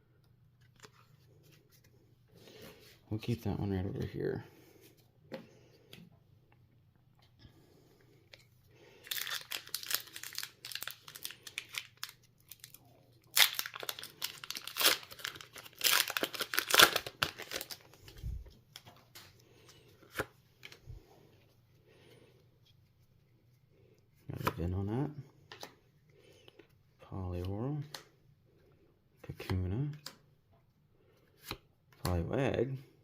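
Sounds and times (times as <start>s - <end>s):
foil wrapper tearing and crinkling: 9.0s - 17.9s.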